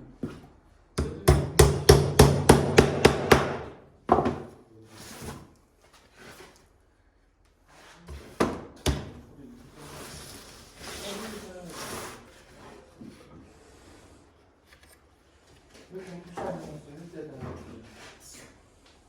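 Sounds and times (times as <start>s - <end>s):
hammer striking wood: 1.0s - 4.5s, 8.4s - 9.2s
soft scraping: 9.7s - 18.5s.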